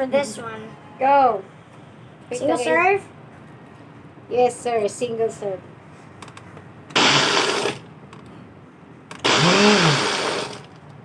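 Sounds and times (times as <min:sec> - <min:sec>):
blender motor running: 0:07.0 - 0:07.8, 0:09.2 - 0:10.7.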